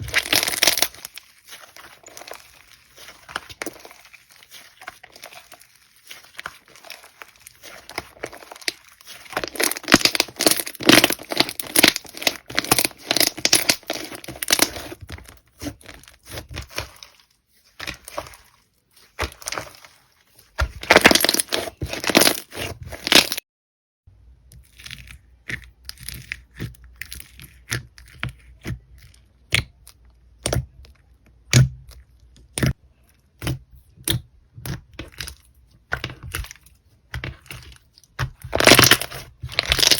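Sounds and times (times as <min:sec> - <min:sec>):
slime crackling and popping: 0:00.0 - 0:18.4, 0:19.0 - 0:23.4, 0:37.4 - 0:39.9.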